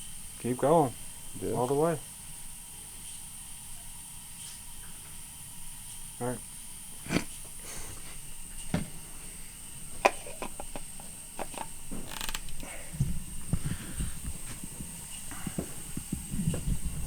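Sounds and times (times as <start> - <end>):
low thumps: 13.0 - 17.0.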